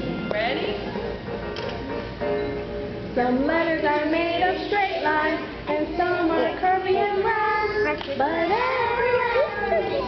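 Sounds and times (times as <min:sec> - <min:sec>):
child singing: 0:03.5 - 0:10.0.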